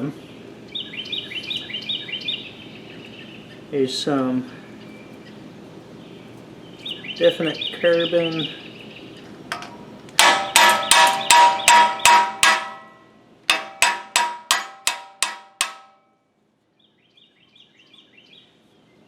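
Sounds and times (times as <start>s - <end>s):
hammer ringing on metal: 9.5s - 16.2s.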